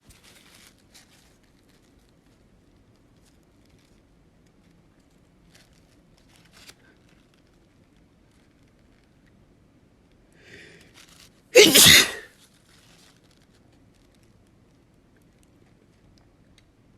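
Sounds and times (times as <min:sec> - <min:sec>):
faint rustles: 0:00.0 - 0:09.3, 0:10.6 - 0:11.5, 0:12.3 - 0:16.2.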